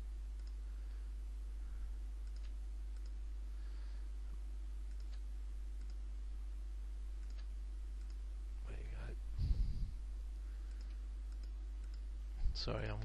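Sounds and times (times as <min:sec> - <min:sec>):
low electrical hum: 0:00.0 - 0:13.0
computer mouse clicks: 0:00.4 - 0:00.6, 0:02.2 - 0:03.2, 0:04.9 - 0:06.0, 0:07.2 - 0:08.2, 0:10.6 - 0:12.1.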